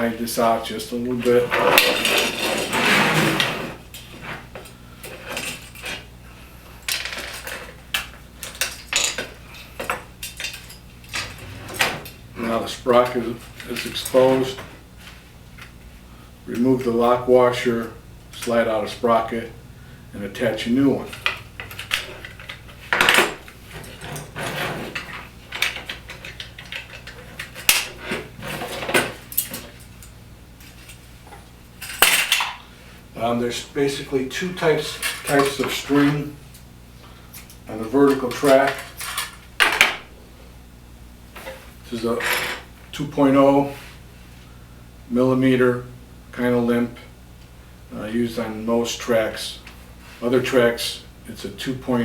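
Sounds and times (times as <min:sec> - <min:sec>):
blind track scraping: 0:00.0 - 0:04.5, 0:11.1 - 0:15.2, 0:23.6 - 0:25.3, 0:27.1 - 0:29.1
blind parts clicking: 0:21.0 - 0:31.0.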